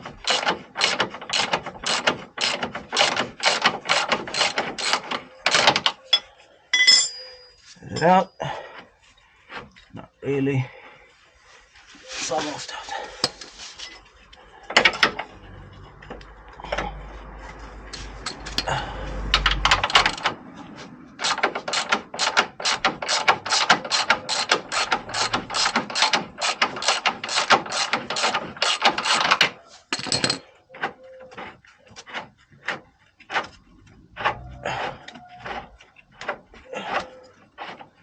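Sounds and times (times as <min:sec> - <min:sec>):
metallic clanks: 0:04.1 - 0:08.2
ratchet wrench clicking: 0:21.2 - 0:29.2.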